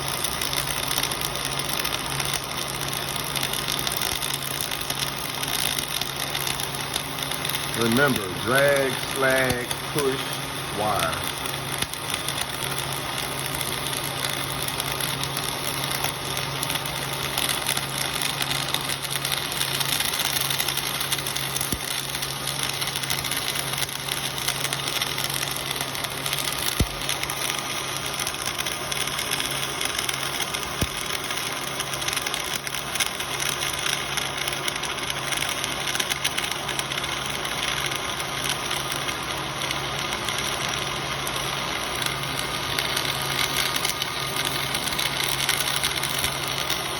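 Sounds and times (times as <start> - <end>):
welding arc crackling: 0.0 - 46.9
steady low hum: 5.9 - 15.0.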